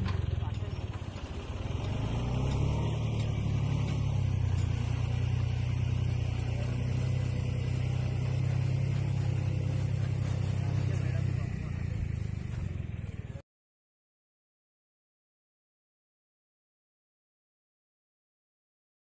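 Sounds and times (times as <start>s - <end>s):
steady low rumble: 3.1s - 13.4s.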